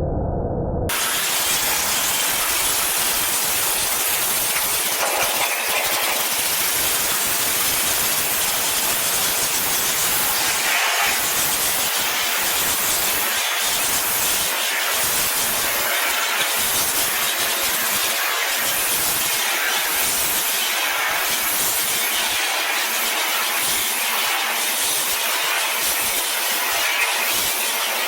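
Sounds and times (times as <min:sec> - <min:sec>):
pressure washer spraying metal: 0:00.9 - 0:28.0.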